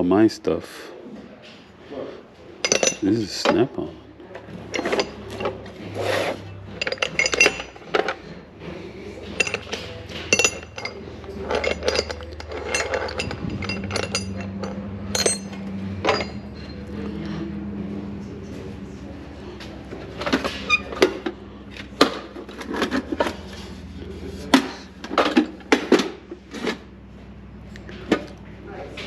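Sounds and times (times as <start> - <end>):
metal hand tools clinking: 2.6 - 3.4, 4.7 - 8.2, 9.2 - 16.8
steady low hum: 3.9 - 29.0
steady low tone: 8.4 - 22.0.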